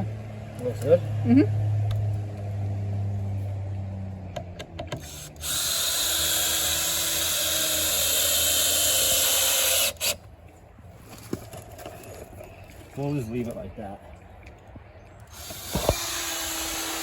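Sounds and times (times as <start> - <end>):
power drill running: 5.0 - 10.2, 15.3 - 17.0.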